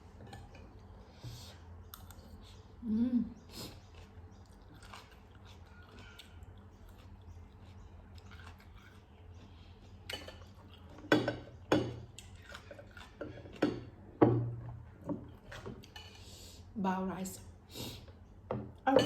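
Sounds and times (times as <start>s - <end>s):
cutlery clinking against dishes: 10.1s - 14.5s.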